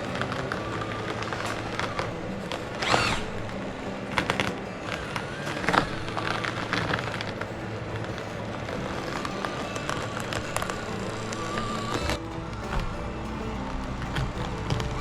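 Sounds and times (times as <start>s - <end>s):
small electric motor whining: 0.0s - 15.0s.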